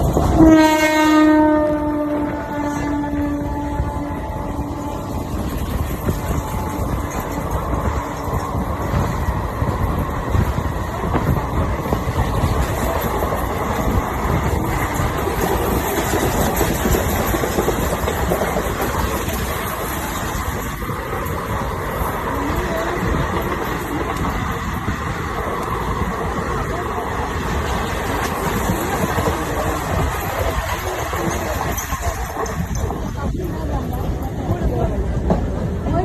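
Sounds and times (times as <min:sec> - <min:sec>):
train wheels rumbling on track: 0:00.0 - 0:36.0
train horn: 0:00.1 - 0:07.5.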